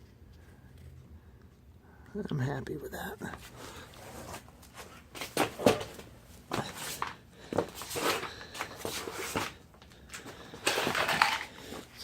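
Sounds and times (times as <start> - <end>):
knocks and scuffs: 3.4 - 9.6.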